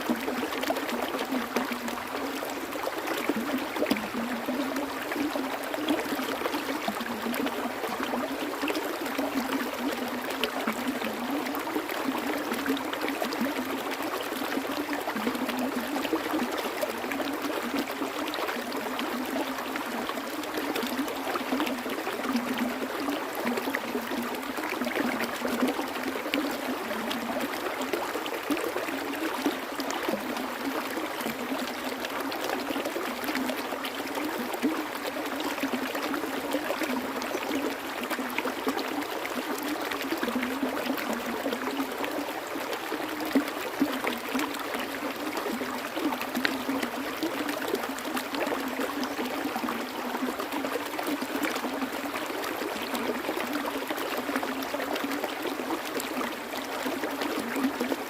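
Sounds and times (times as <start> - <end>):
stream babbling: 0.0 - 58.0.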